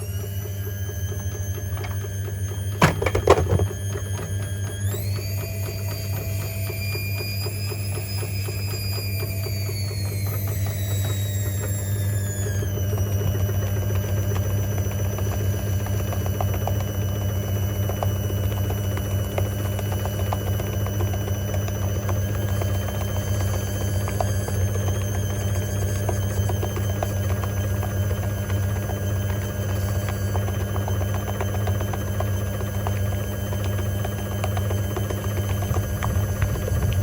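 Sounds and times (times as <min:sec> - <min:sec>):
washing machine motor whine: 0:00.0 - 0:37.0.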